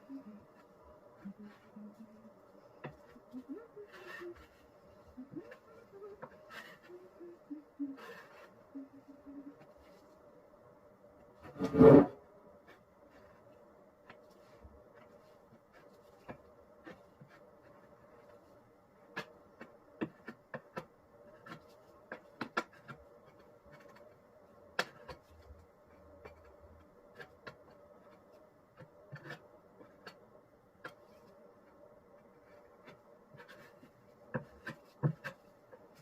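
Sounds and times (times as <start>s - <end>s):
steady hum: 0.0s - 36.0s
hand tool scraping and tapping: 24.8s - 30.2s, 32.4s - 36.0s.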